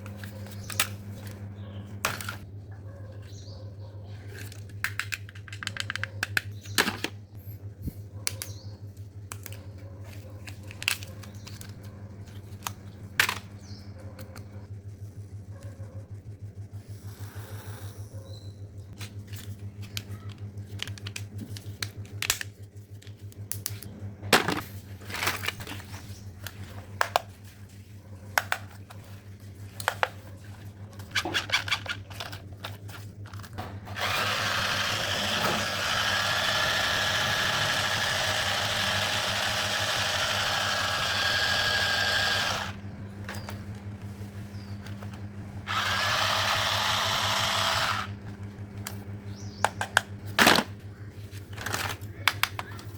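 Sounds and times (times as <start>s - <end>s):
plastic toys clicking: 4.4s - 6.5s, 51.6s - 52.9s
toy motor whirring: 31.0s - 42.9s, 45.6s - 48.2s.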